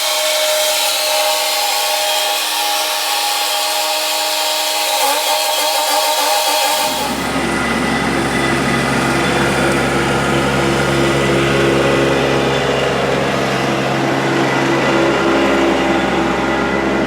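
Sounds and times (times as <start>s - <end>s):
engine running steadily: 4.9s - 17.0s.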